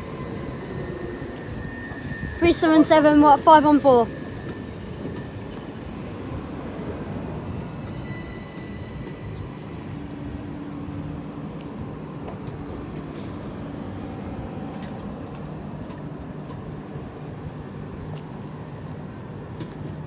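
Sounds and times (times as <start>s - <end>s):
train wheels rumbling on rails: 0.0s - 20.0s.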